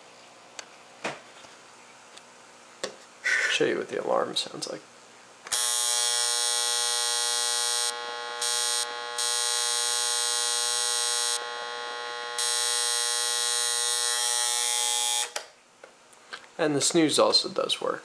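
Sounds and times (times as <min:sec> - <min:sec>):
alarm clock buzzer: 0:05.5 - 0:15.4.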